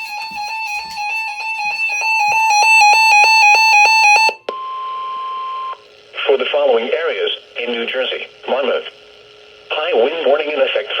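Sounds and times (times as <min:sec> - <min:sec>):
electronic keyboard melody: 0:00.0 - 0:04.4.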